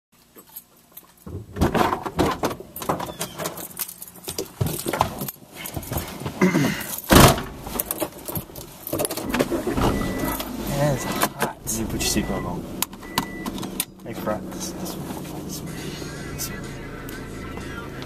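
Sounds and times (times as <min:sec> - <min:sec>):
clicks and rattles inside car: 0:00.4 - 0:15.6
loud thump: 0:07.1 - 0:07.6.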